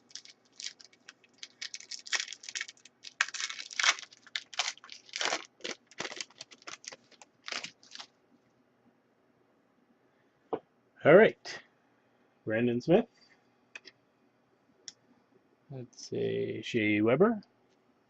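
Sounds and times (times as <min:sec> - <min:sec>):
card wrapper ripping and crinkling: 0:00.0 - 0:08.1.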